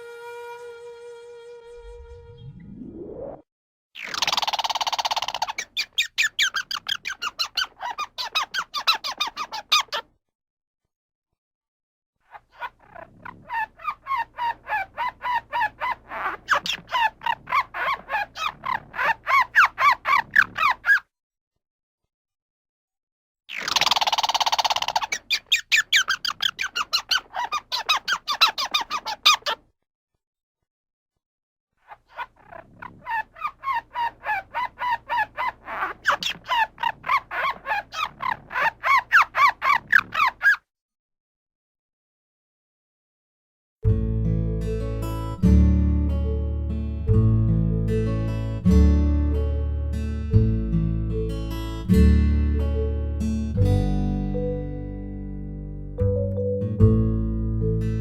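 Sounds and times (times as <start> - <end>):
squirrel chattering: 4.0 - 10.0, 12.8 - 21.0, 23.5 - 29.6, 32.2 - 40.6.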